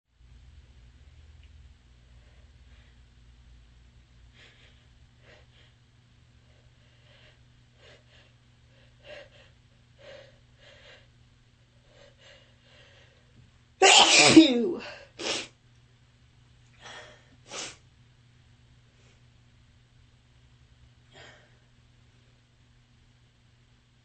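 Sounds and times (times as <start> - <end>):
person sniffling: 13.8 - 15.5.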